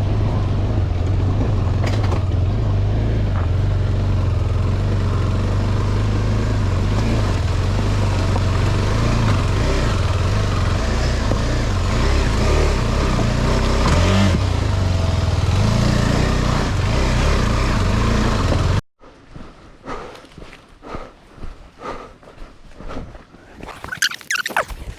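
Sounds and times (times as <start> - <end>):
motorcycle engine running: 0.0 - 18.8.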